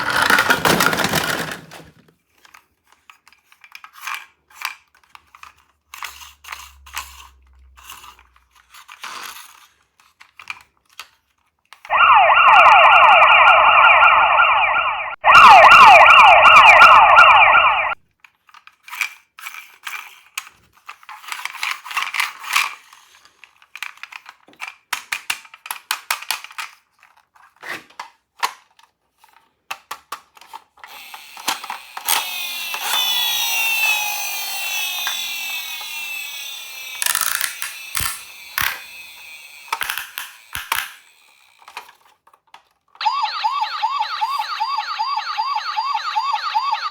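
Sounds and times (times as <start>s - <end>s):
plastic toy clicks and rattles: 0.0s - 11.9s, 18.2s - 43.0s
toy electronic siren wavering: 11.9s - 18.0s, 30.9s - 41.8s, 43.0s - 46.9s
hissing whirring sound: 30.9s - 41.4s.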